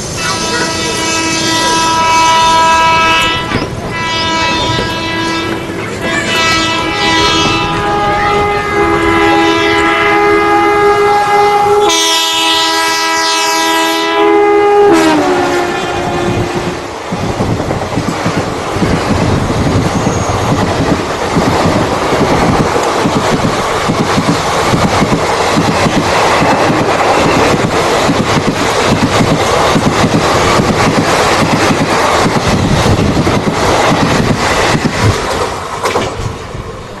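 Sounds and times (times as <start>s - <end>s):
locomotive horn: 0.2s - 16.9s
train wheels clattering: 16.3s - 36.5s.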